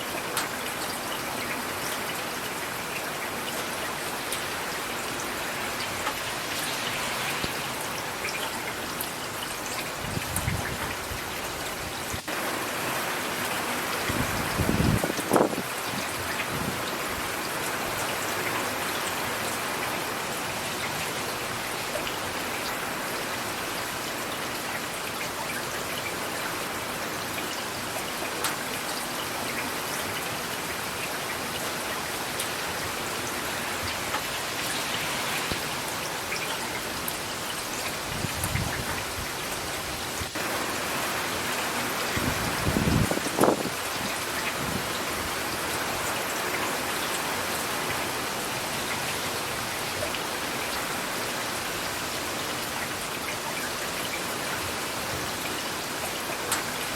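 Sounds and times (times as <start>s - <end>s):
heavy rain hissing: 2.4s - 10.6s, 31.5s - 53.1s.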